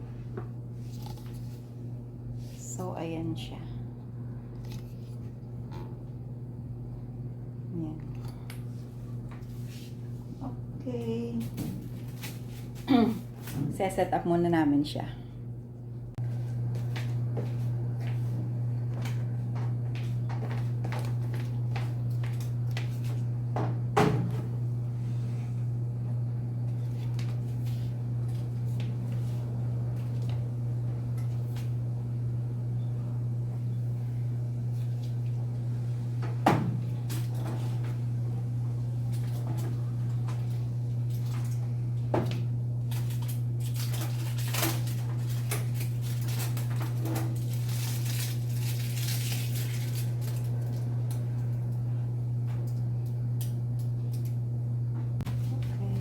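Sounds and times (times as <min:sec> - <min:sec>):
microwave oven knocks and clunks: 0:23.5 - 0:24.6, 0:36.2 - 0:37.0.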